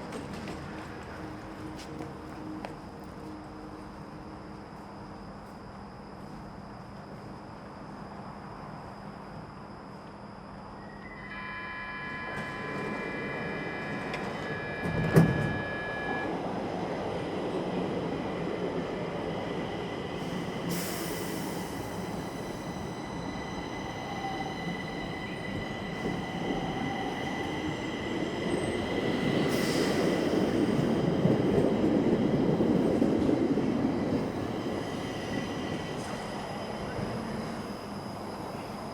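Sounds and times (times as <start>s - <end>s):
subway train rumble: 0.0s - 38.9s
high multi-tone whine: 10.8s - 16.5s.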